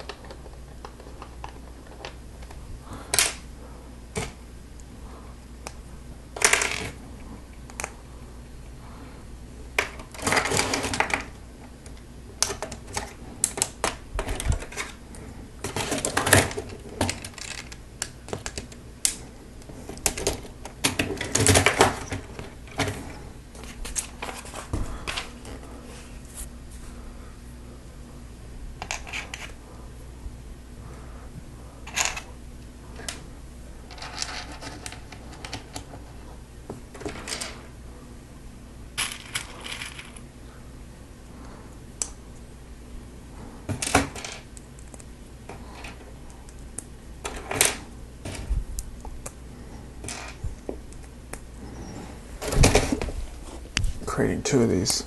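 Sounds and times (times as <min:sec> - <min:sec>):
plastic parts rattling: 0:15.6 - 0:18.8, 0:33.9 - 0:35.8
plastic pieces clicking: 0:15.6 - 0:19.2.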